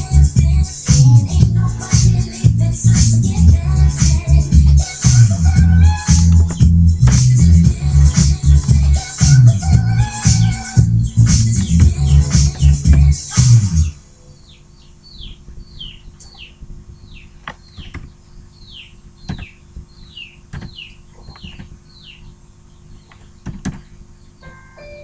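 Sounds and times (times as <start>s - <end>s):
music: 0.0s - 14.0s, 24.4s - 25.0s
bird chirping: 4.8s - 25.0s
sharp clicks: 20.5s - 21.7s, 23.1s - 23.9s.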